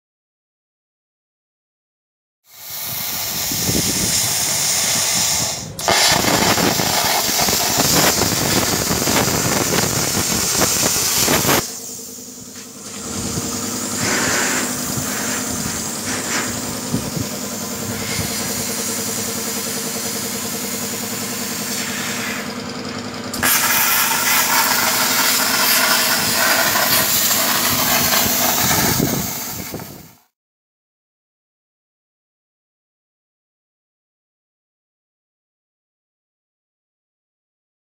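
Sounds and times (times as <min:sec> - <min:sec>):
plasma cutter hissing: 0:02.5 - 0:22.7, 0:23.3 - 0:30.3
steady hum: 0:05.6 - 0:29.8.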